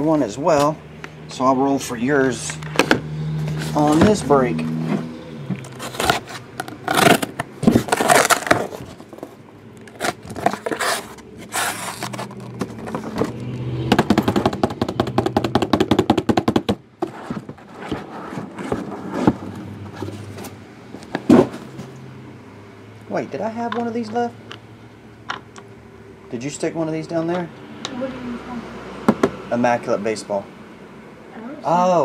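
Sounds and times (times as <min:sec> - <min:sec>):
cardboard boxes scraping and knocking: 0:02.8 - 0:21.9.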